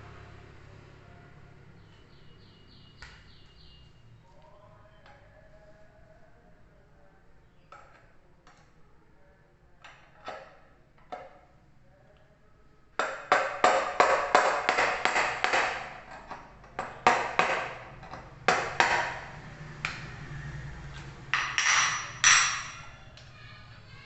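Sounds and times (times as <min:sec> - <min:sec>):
metal tool knocking on metal: 0:13.0 - 0:19.3, 0:21.4 - 0:23.0.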